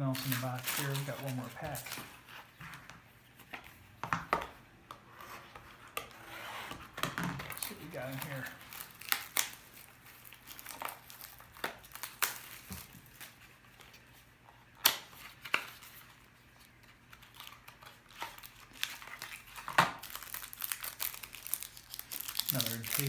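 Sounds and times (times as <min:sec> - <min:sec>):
plastic wrapper tearing and crinkling: 0:00.0 - 0:02.3, 0:07.3 - 0:14.2, 0:14.8 - 0:23.0.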